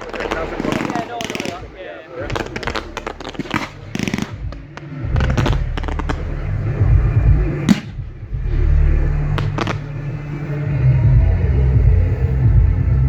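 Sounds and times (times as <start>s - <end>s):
fireworks bangs and cracks: 0.0s - 8.6s, 9.2s - 10.2s
heavy low rumble: 0.0s - 13.0s.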